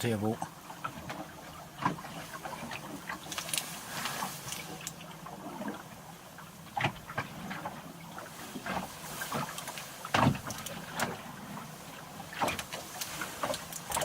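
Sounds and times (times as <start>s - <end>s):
water gurgling along a hull: 0.0s - 14.0s
small clicks and knocks: 12.4s - 14.0s.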